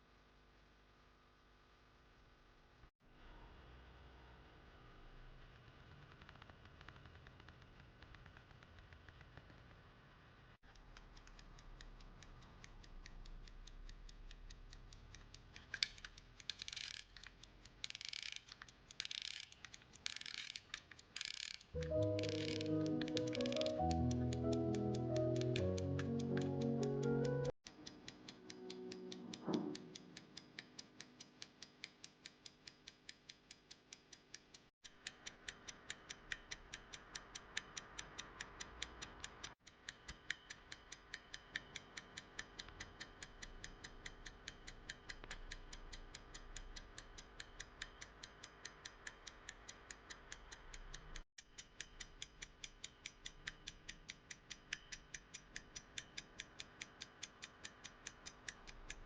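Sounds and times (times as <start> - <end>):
pocket watch ticking: 10.6 - 59.0.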